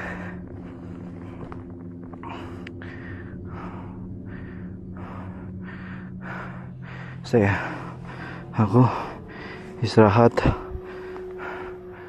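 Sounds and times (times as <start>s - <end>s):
steady low hum: 0.0s - 12.0s
man panting hard: 2.2s - 9.8s.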